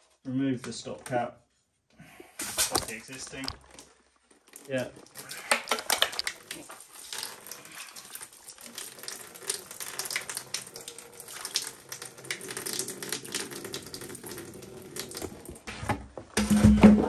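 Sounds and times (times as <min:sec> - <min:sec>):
water splashing from pipe: 0:02.4 - 0:15.7.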